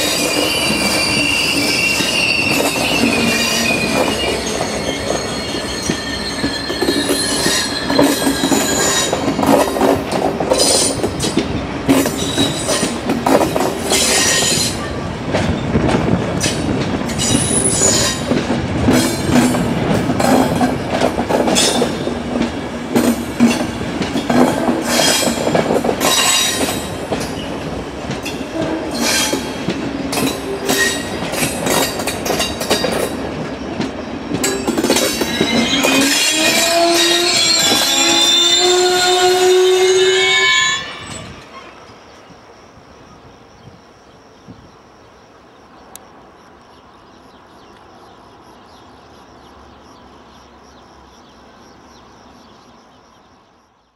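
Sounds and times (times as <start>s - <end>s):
wheels clacking over rail joints: 0.0s - 39.8s
train wheels squealing on rails: 0.0s - 44.8s.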